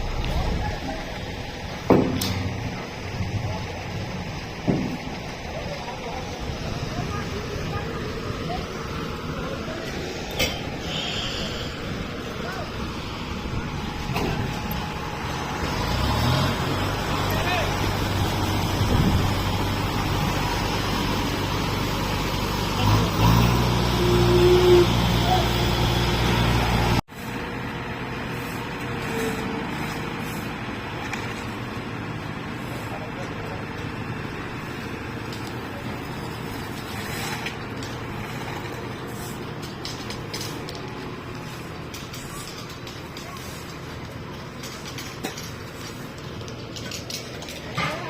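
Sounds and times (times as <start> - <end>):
close engine hum: 0.0 - 48.0
motor vehicles on road: 0.0 - 48.0.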